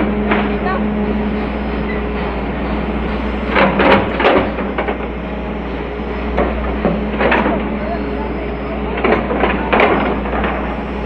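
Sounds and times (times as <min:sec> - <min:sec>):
excavator diesel engine droning: 0:00.0 - 0:11.0.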